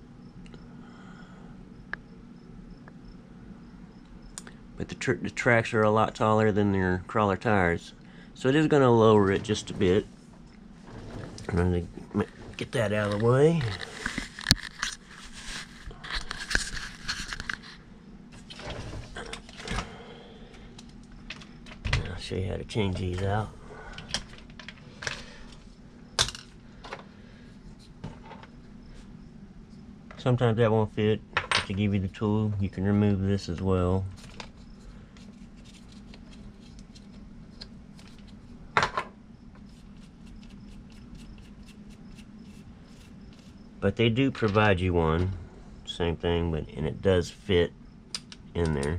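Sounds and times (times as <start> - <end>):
steady low hum: 0.0 - 48.9
scraping and rustling: 8.7 - 17.8, 34.1 - 38.7, 39.5 - 43.8.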